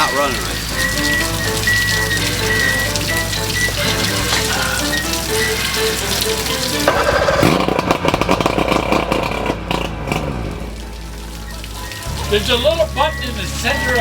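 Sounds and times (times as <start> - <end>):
radio music: 0.0 - 7.4, 11.2 - 14.0
outboard motor running roughly: 0.0 - 10.6
person talking: 12.2 - 14.0.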